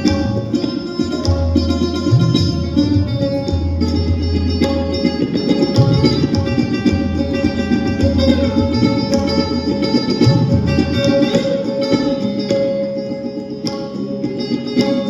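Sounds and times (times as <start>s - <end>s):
plucked sitar and sarod: 0.0s - 15.0s
tabla drumming: 0.0s - 15.0s.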